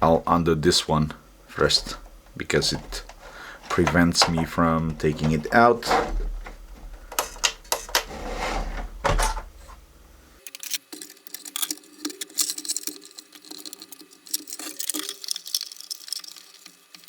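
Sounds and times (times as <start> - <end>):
low machine hum: 0.0 - 10.4
small plastic clicks and rattles: 1.6 - 8.1, 10.4 - 17.0
knocks and clicks on plastic: 1.6 - 8.2.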